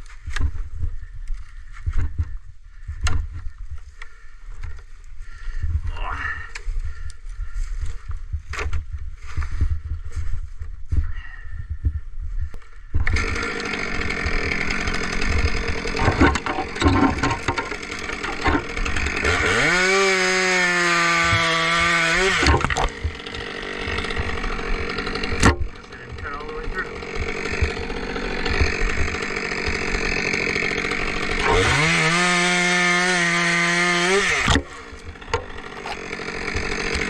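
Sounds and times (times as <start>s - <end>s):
chainsaw running: 13.0s - 37.0s.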